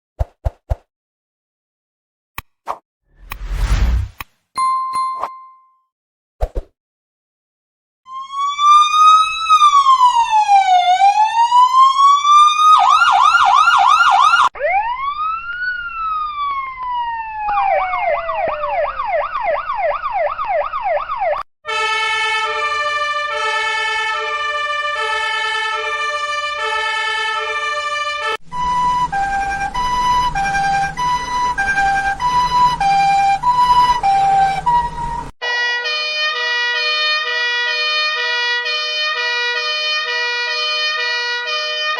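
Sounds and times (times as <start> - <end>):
low hum: 3.2 - 4.2
electronic siren patterns: 25.4 - 35.3.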